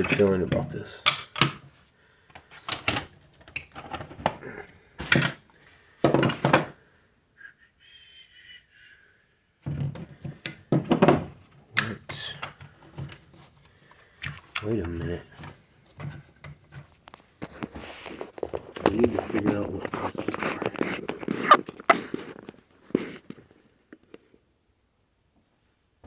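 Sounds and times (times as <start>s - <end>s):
plastic parts knocking: 0.0s - 1.7s, 2.3s - 4.4s, 5.0s - 5.4s, 6.0s - 6.8s, 9.6s - 19.5s
packaging being handled: 13.0s - 23.4s.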